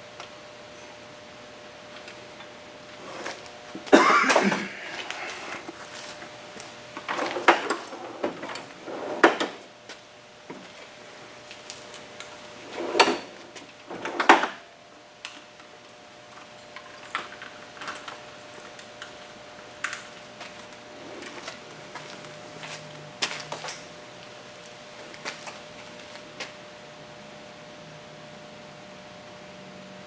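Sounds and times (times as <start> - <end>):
tools and parts clunking: 7.0 - 9.6.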